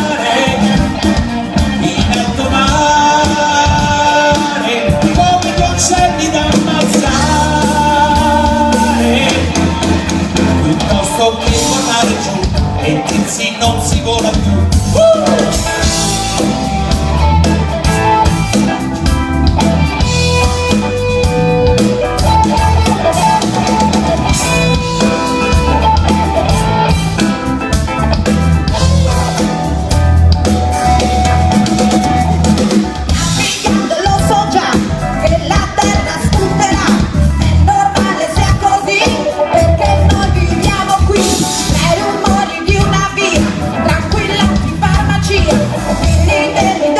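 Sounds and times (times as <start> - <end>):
live rock band playing: 0.0 - 46.9.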